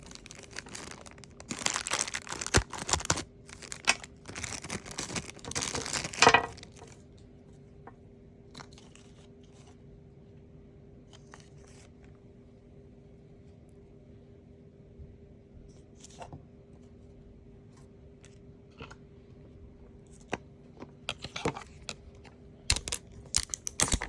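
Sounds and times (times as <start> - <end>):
plastic packaging tearing and crinkling: 0.0 - 7.0, 22.7 - 24.0.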